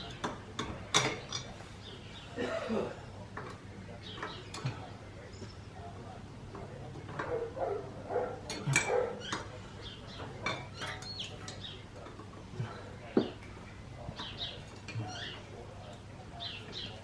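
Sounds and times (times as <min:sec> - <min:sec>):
sharp knocks and clinks: 0:00.0 - 0:01.6, 0:08.5 - 0:09.6, 0:10.2 - 0:13.5
birds chirping: 0:00.0 - 0:17.0.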